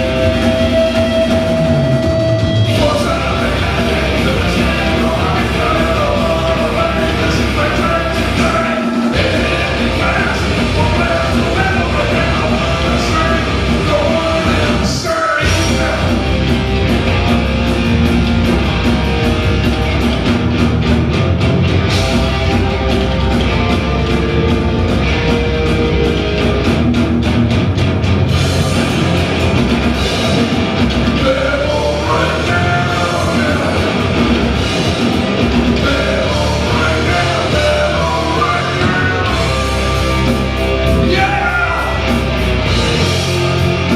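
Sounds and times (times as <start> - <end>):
male lead vocal singing: 0.0 - 16.3, 31.1 - 34.4, 35.7 - 39.9, 41.0 - 42.2
live rock band: 0.0 - 43.9.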